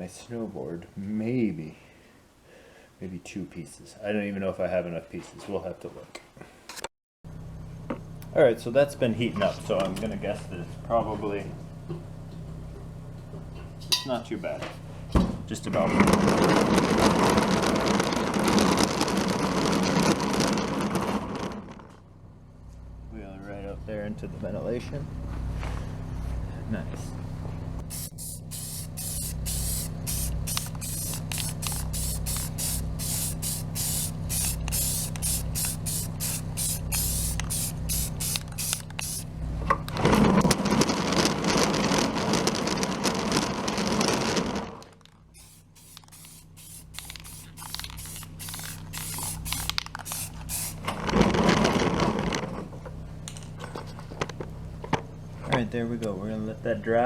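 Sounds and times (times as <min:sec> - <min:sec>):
spray paint spraying: 0:27.8 - 0:39.3, 0:45.3 - 0:51.2.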